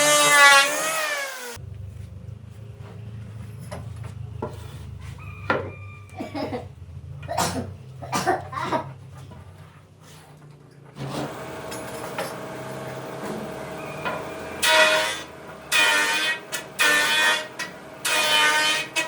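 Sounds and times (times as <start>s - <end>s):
power tool cutting wood: 0.0s - 1.6s, 11.0s - 19.0s
woodworking power tool running: 0.0s - 1.6s, 11.0s - 19.0s.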